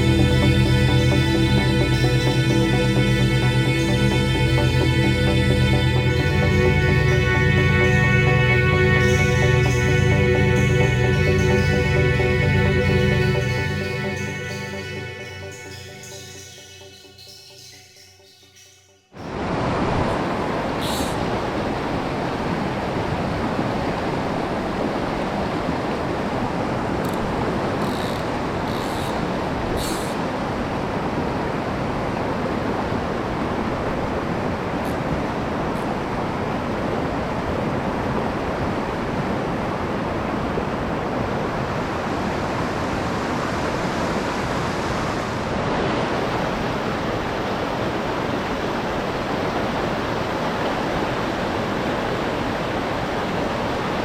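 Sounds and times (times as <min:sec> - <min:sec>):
mountain stream rushing: 0:19.2 - 0:54.0.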